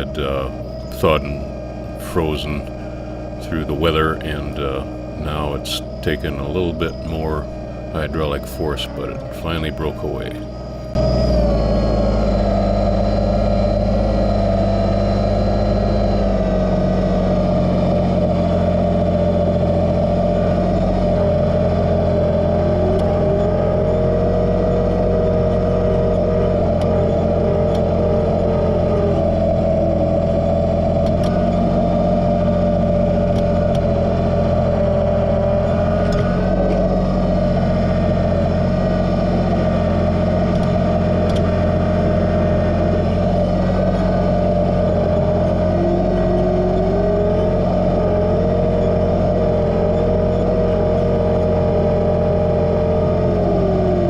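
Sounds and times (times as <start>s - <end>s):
tractor diesel engine running: 0.0s - 54.0s
rising and falling tone: 3.5s - 18.8s.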